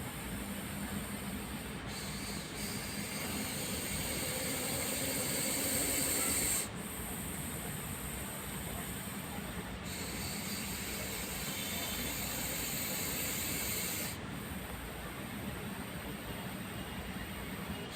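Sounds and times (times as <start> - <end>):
snake hissing: 1.1 - 9.2, 9.8 - 14.2.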